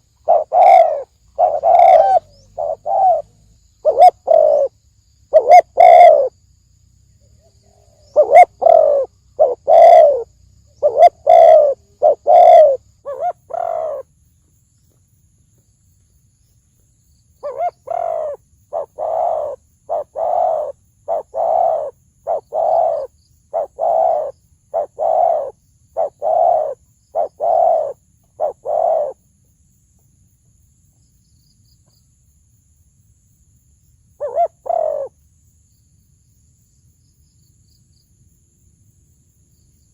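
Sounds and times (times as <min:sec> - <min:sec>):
dove cooing: 0:00.0 - 0:06.3, 0:07.7 - 0:14.0, 0:17.4 - 0:29.2, 0:34.2 - 0:35.1.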